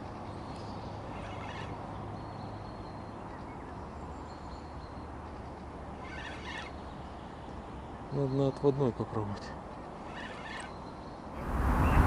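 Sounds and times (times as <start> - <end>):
outdoor rushing noise: 11.4 - 12.0.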